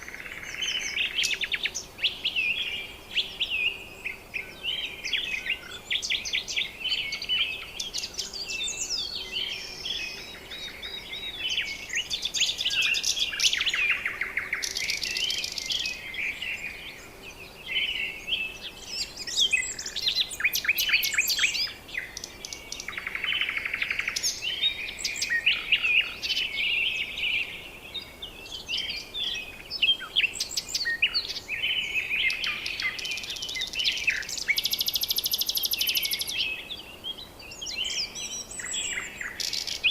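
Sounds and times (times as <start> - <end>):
songbirds chirping and trilling: 0.0 - 39.9.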